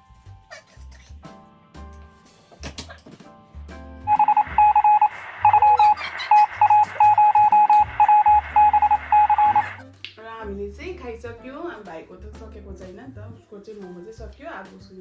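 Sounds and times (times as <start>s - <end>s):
high electronic beeps: 4.1s - 9.8s.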